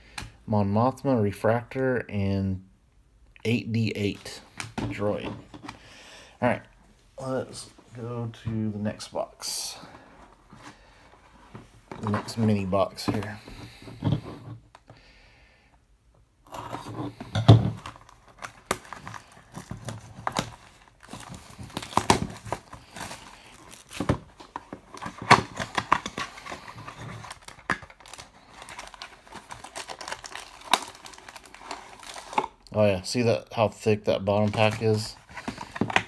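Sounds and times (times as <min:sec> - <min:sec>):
card packs crinkling and rustling: 0:03.8 - 0:05.9, 0:07.2 - 0:14.8, 0:16.5 - 0:32.6, 0:34.2 - 0:36.0.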